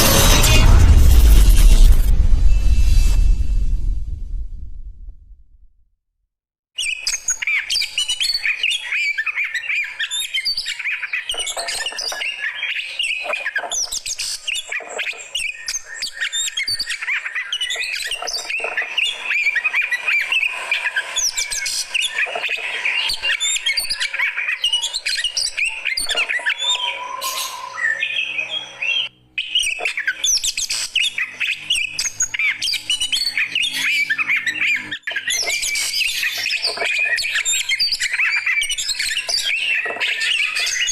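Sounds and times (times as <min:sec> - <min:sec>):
songbird chirping and whistling: 0:15.4 - 0:40.9.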